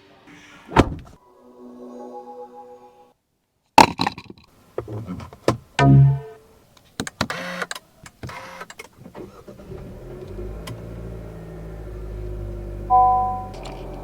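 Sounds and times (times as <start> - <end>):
car engine starting and idling: 8.3 - 14.0
brief tone: 12.9 - 13.6.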